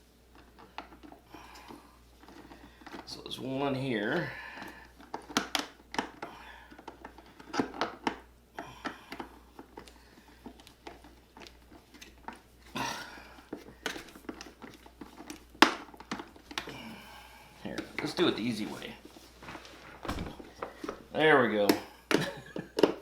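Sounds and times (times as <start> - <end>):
plastic parts clicking and knocking: 0.3 - 3.1, 4.6 - 12.8, 13.4 - 16.8, 20.0 - 23.0.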